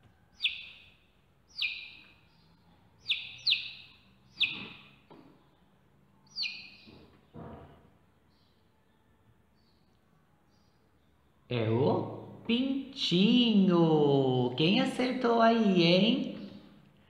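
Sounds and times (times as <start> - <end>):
chick peeping: 0.3 - 5.3, 6.3 - 7.3.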